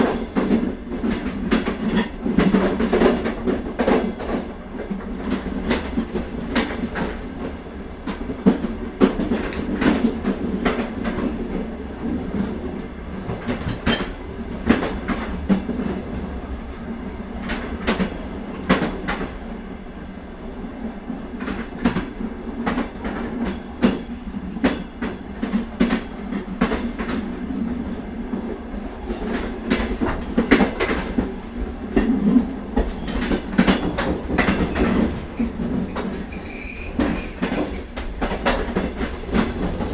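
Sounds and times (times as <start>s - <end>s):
train coaches rumbling: 0.0s - 39.9s
wheels clacking over rail joints: 8.1s - 16.0s, 29.1s - 39.9s.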